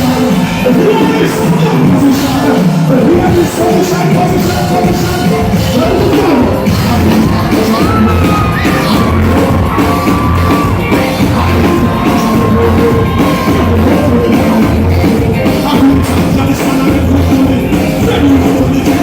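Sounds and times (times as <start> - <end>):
heavy bass beat: 0.0 - 19.0
loud live concert music: 0.0 - 19.0.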